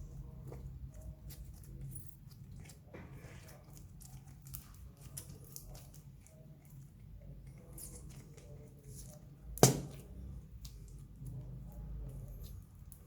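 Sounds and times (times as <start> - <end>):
slime squishing: 0.0 - 13.0
loud sharp pop: 9.6 - 10.0.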